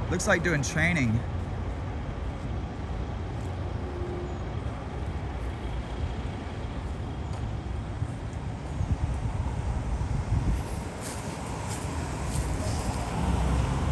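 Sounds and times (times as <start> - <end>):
low rumble of vehicle traffic: 0.0 - 13.9.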